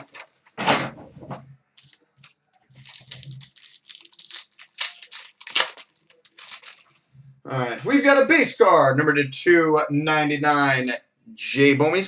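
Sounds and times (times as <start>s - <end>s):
packaging tearing and crackling: 1.8s - 7.0s.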